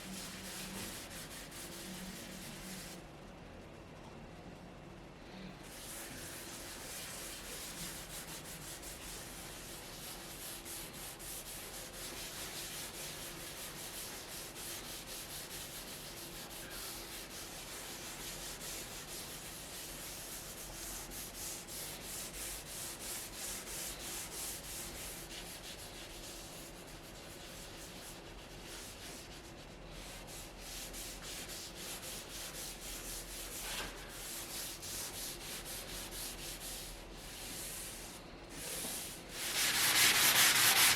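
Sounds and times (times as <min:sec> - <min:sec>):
sandpaper rubbing on wood: 0:30.4 - 0:40.9.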